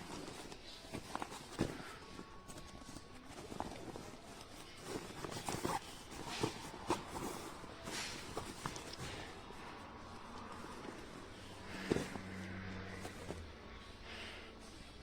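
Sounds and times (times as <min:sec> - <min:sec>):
fabric rustling: 0:00.0 - 0:15.0.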